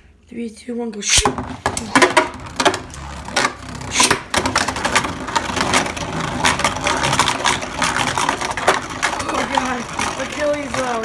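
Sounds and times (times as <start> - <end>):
spinning tops whirring: 1.1 - 11.0
tops clashing and rattling: 1.2 - 11.0.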